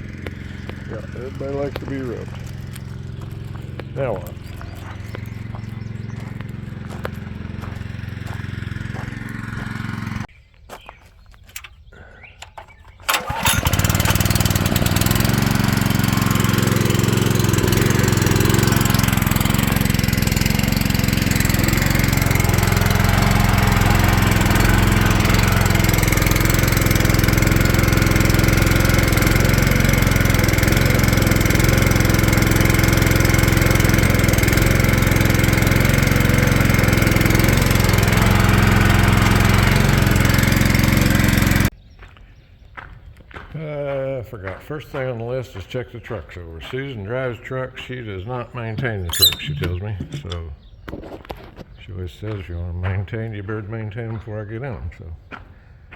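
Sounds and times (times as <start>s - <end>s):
engine idling: 0.0s - 10.3s, 12.4s - 41.7s.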